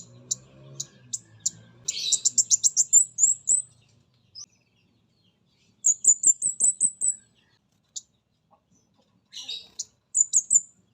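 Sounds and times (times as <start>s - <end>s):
bird singing high sharp notes: 0.0s - 3.8s.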